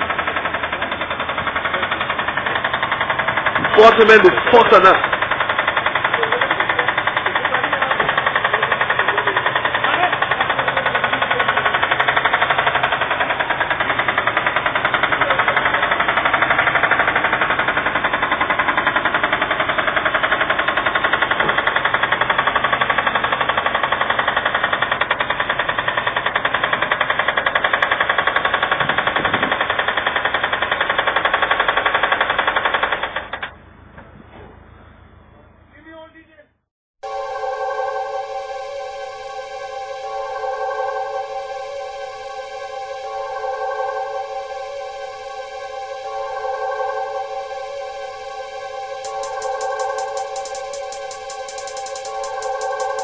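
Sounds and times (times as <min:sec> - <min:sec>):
engine knocking: 0:00.0 - 0:33.6.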